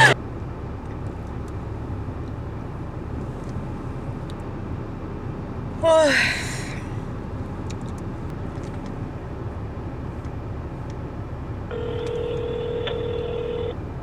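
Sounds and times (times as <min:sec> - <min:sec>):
low steady rumble: 0:00.0 - 0:14.0
telephone ringback tone: 0:11.7 - 0:13.8.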